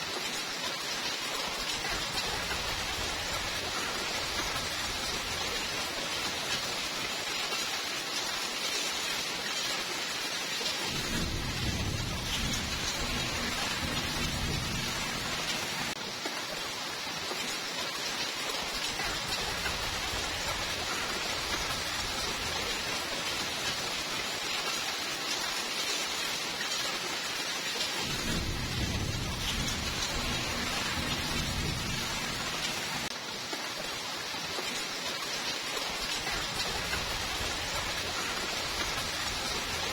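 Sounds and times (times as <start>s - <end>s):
rain hiss: 0.0s - 39.9s
thunder rumbling: 10.8s - 16.0s, 28.0s - 33.1s.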